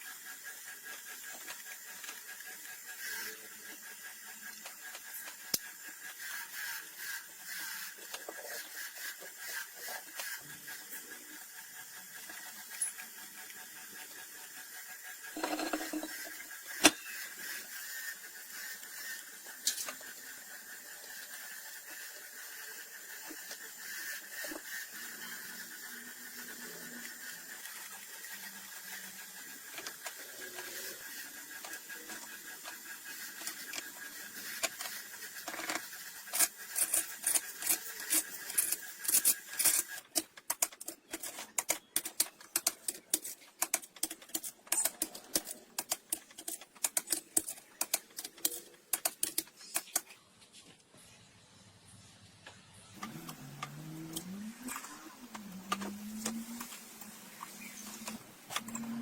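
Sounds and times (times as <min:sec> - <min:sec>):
hand tools tapping metal parts: 0:15.4 - 0:17.1, 0:35.5 - 0:50.1.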